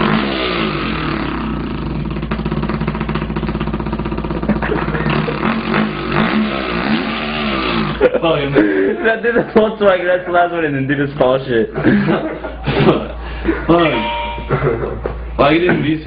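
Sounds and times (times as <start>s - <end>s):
man imitating dirt bike engine: 0.0s - 9.6s.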